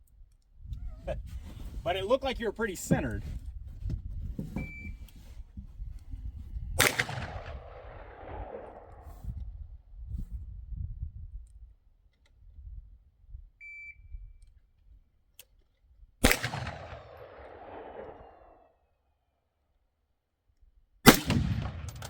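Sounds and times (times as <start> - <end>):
rifle shot with echo: 6.8 - 9.2, 16.2 - 18.6, 21.1 - 22.0.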